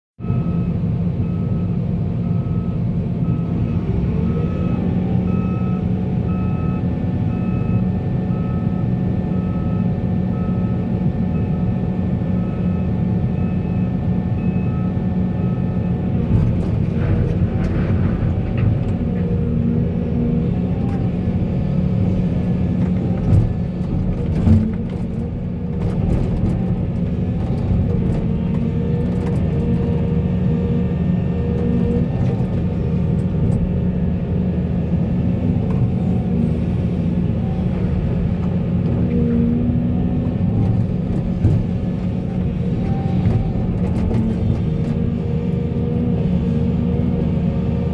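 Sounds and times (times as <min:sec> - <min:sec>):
diesel machinery running: 0:00.2 - 0:47.9.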